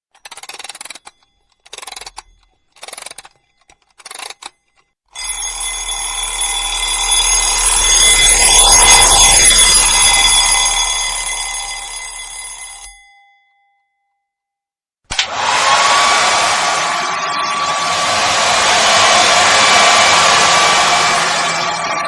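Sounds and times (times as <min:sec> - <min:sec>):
bell-like ringing: 0:05.2 - 0:14.3, 0:15.6 - 0:22.0.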